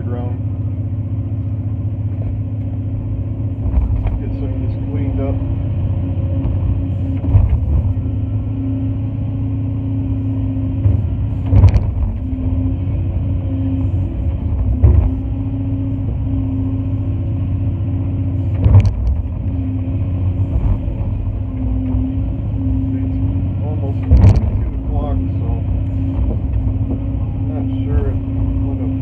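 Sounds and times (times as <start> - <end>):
excavator diesel engine running: 0.0 - 29.0.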